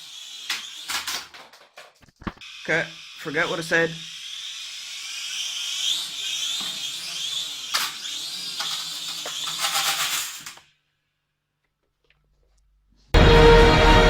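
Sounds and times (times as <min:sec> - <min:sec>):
drone motors buzzing: 0:02.4 - 0:09.8.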